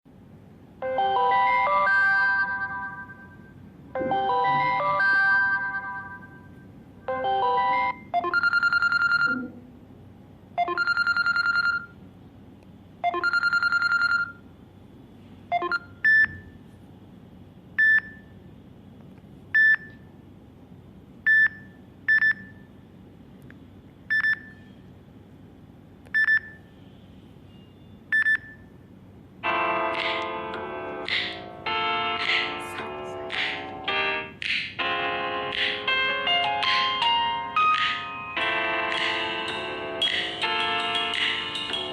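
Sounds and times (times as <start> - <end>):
melodic ringtone: 0.8 - 9.5, 10.6 - 11.9, 13.0 - 14.4, 29.4 - 41.9
electronic tones: 4.0 - 6.0.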